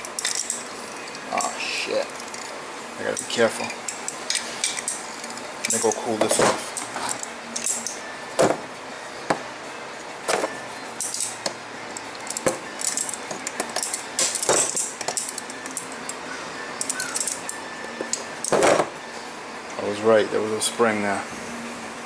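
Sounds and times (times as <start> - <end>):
metal clinks and knocks: 12.2 - 15.9.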